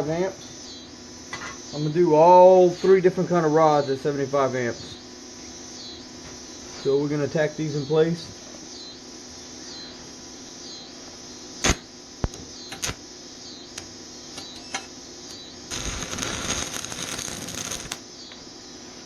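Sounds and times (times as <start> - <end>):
welding arc crackling: 11.6 - 13.0, 13.7 - 18.1.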